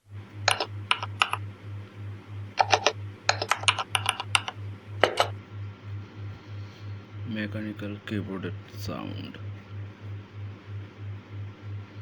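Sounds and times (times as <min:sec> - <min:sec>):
low pulsing hum: 0:00.0 - 0:12.0
mechanical keyboard clicks: 0:00.5 - 0:01.4, 0:02.6 - 0:05.3.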